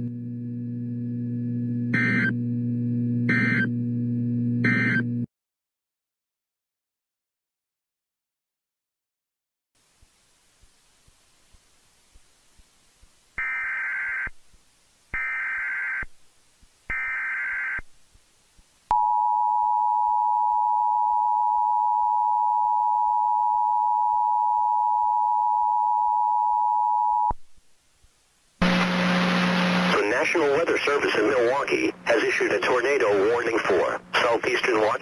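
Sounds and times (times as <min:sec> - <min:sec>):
noise burst with low hum: 0:09.8 - 0:13.7, 0:27.3 - 0:35.0.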